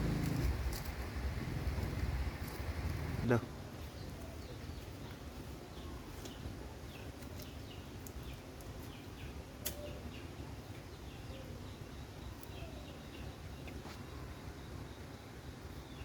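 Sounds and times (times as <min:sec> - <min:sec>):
low steady rumble: 0:00.0 - 0:03.3
small birds chirping: 0:03.2 - 0:16.0.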